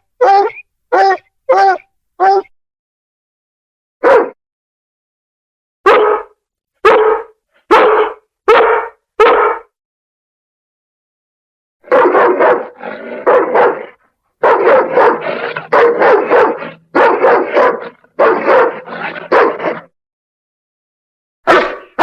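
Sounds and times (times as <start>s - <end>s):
dog barking: 0.2s - 2.5s, 4.0s - 4.4s, 5.8s - 9.7s, 11.8s - 19.9s, 21.4s - 22.0s.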